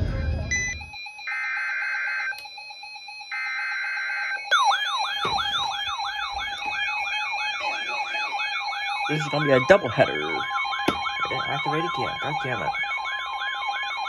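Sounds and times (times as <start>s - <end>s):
warbling alarm siren: 0.0s - 14.0s
buzzing digital data tones: 4.5s - 13.2s.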